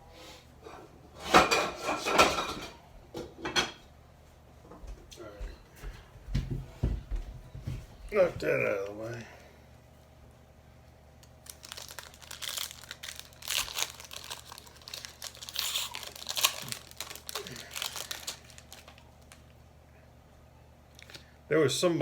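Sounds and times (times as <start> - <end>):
wrapper crinkling and tearing: 11.2 - 19.6.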